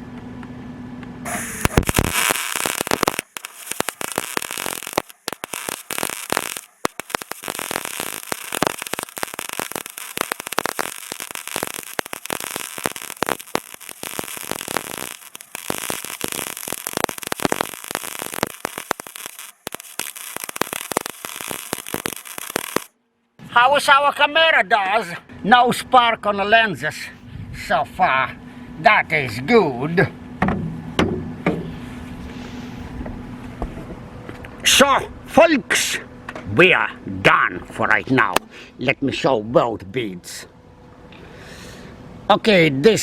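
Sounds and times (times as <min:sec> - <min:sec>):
welding arc crackling and sizzling: 0:01.2 - 0:23.0.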